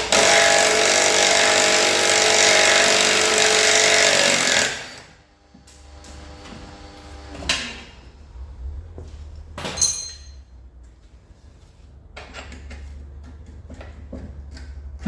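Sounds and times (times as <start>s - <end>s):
metal tools clanking: 9.4s - 10.6s.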